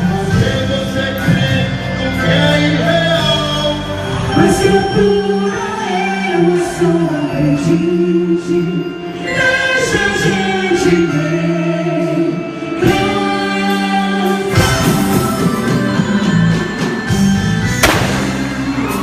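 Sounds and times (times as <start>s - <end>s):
folk dance music: 15.2s - 19.0s.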